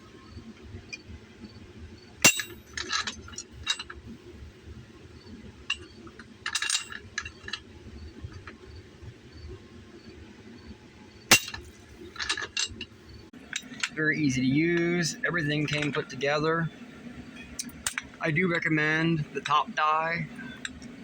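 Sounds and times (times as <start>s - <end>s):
steel parts clinking: 2.2s - 4.0s, 5.7s - 7.6s, 11.3s - 12.9s, 13.5s - 14.0s, 15.6s - 16.0s, 17.4s - 18.1s
metal strike: 2.3s - 2.6s, 11.3s - 11.7s.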